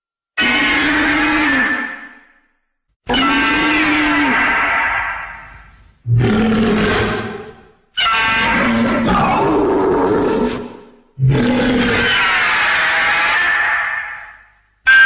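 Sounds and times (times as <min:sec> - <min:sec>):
raspy monster roars: 0:03.1 - 0:05.5, 0:06.1 - 0:14.4.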